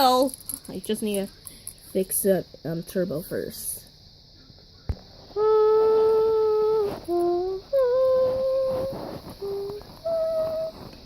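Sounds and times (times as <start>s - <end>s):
person humming: 5.4s - 11.0s.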